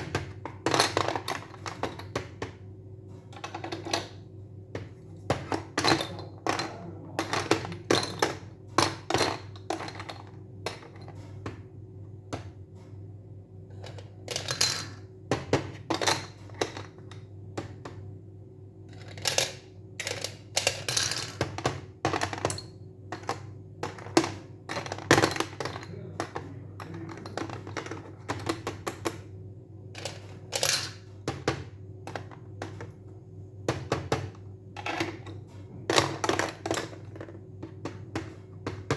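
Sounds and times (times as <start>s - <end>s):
steady low hum: 0.0s - 38.9s.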